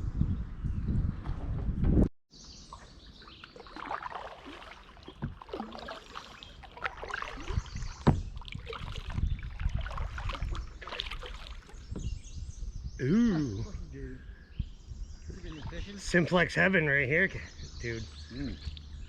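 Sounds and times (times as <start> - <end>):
paddle splashing in water: 2.6 - 12.1.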